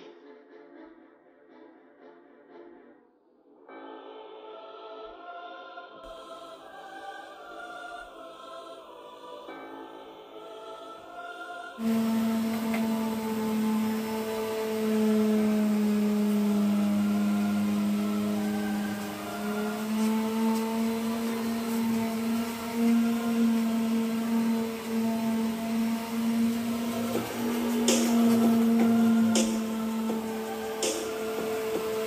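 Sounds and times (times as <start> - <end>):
electric motor humming whine: 11.8 - 32.0.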